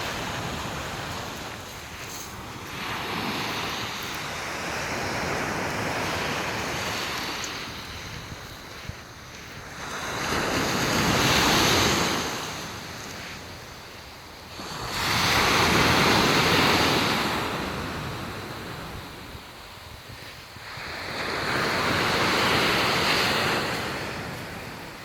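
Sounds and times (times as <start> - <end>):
surf breaking on beach: 0.0 - 8.8, 20.6 - 25.0.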